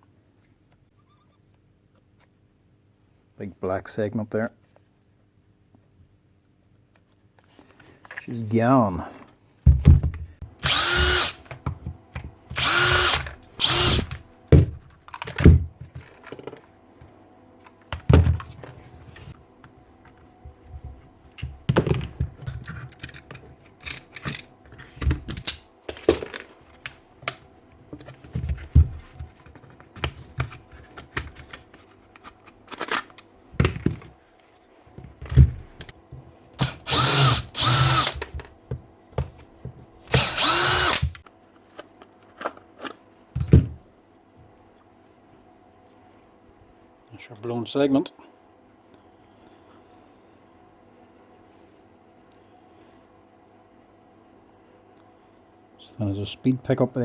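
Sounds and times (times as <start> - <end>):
cordless drill spinning: 10.6 - 11.5, 12.6 - 14.2, 36.6 - 38.3, 40.1 - 41.2
parts being handled: 20.0 - 43.5.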